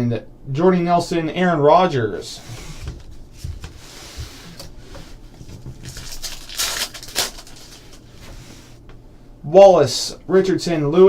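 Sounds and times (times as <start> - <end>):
cards and wrappers rustling: 2.6 - 8.2.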